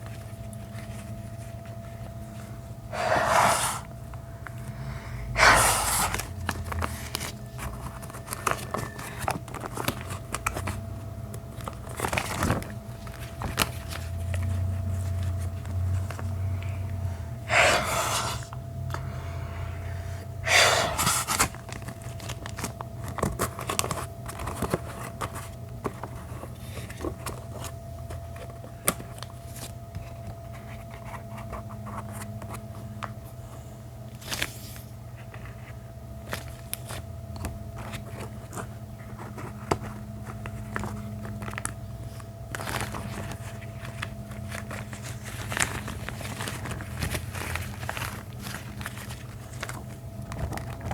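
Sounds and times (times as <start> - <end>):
gloves rubbing and crinkling: 0.2 - 3.9, 17.5 - 18.5, 20.5 - 22.7, 42.4 - 50.9.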